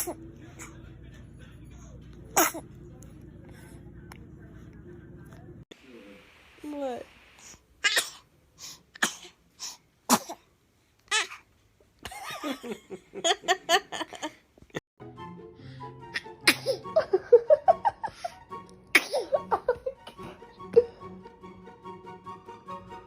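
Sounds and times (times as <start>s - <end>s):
baby sneezing: 2.3s - 2.6s, 7.8s - 8.2s, 9.0s - 10.5s, 16.1s - 16.9s, 18.9s - 19.3s
background music: 15.0s - 23.0s.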